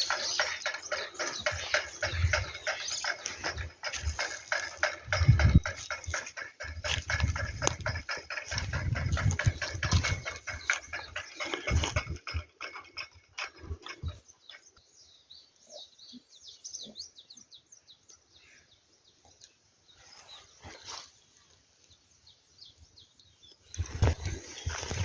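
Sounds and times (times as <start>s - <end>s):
rustling and knocking noises: 0.0s - 14.4s, 23.8s - 25.0s
small birds chirping: 0.0s - 25.0s.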